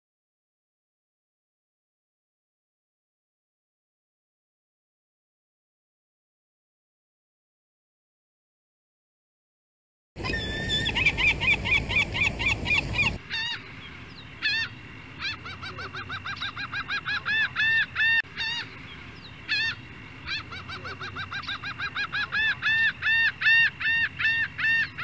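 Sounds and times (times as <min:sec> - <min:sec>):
gulls calling: 0:10.2 - 0:25.0.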